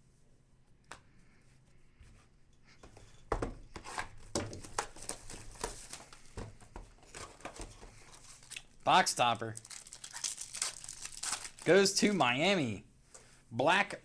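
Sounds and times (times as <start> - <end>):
cards tapping: 2.8 - 12.3
packaging tearing and crinkling: 4.0 - 12.2.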